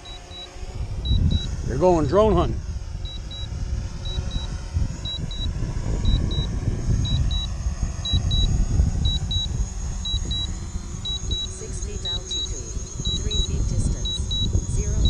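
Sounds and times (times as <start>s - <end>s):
wind buffeting microphone: 0.0s - 15.0s
high double beep: 1.1s - 1.5s, 4.1s - 6.5s, 7.1s - 7.5s, 11.1s - 15.0s.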